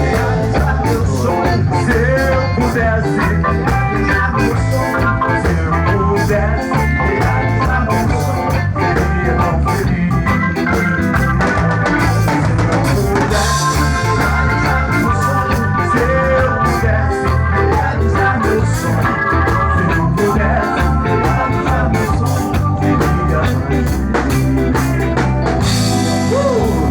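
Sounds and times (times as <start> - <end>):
bass: 0.0 - 26.9
live band playing up-tempo: 0.0 - 26.9.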